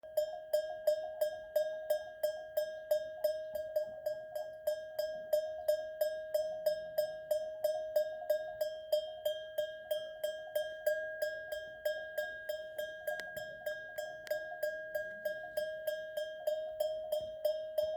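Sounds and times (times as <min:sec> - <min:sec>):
goat bell clanking: 0:07.6 - 0:17.9.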